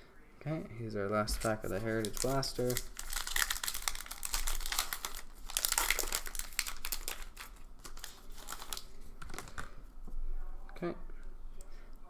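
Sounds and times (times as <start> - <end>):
wrapper tearing and crinkling: 1.3 - 9.8.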